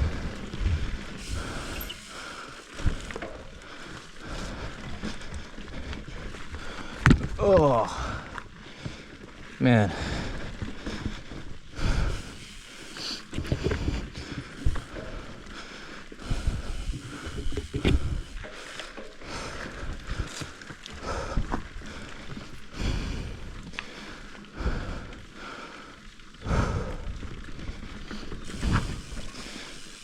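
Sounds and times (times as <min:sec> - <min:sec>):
bike knocks and rattles: 0:00.0 - 0:03.5, 0:13.3 - 0:15.3, 0:16.2 - 0:20.6.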